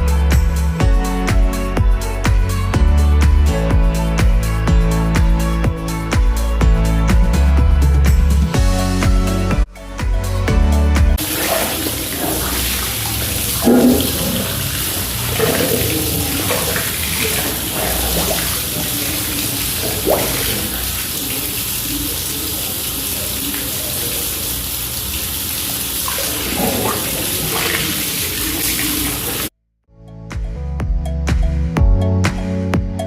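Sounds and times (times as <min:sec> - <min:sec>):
music with a steady beat: 0:00.0 - 0:11.2, 0:29.9 - 0:33.0
water running from a tap: 0:11.2 - 0:29.5.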